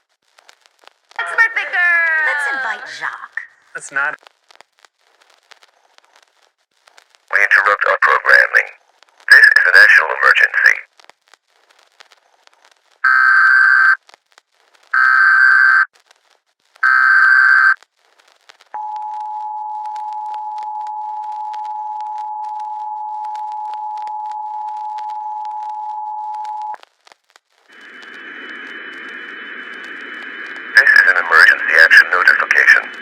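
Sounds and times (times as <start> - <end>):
faint crackling clicks: 0.1 - 1.2, 4.2 - 15.1, 15.9 - 17.0, 17.6 - 19.1, 21.4 - 33.0.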